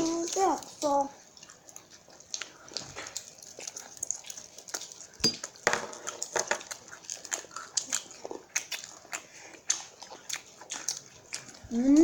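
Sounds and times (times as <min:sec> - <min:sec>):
people chewing fried chicken: 0:00.0 - 0:12.0
dishes clinking: 0:05.2 - 0:06.6.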